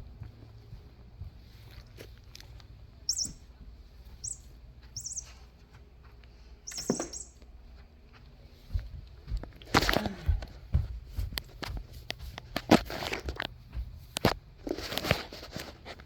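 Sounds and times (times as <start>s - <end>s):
high bird-like chirps: 3.1s - 3.5s, 4.2s - 5.5s, 6.7s - 7.4s.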